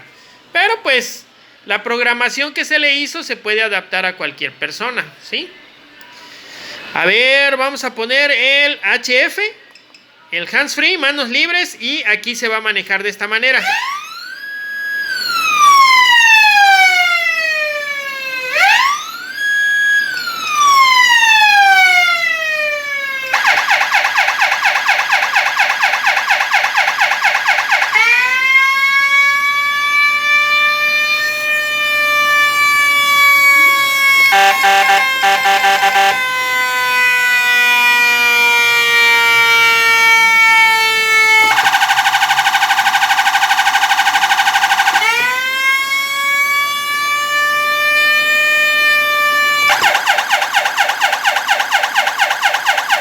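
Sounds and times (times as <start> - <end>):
electronic siren cycling tones: 13.6 - 53.0.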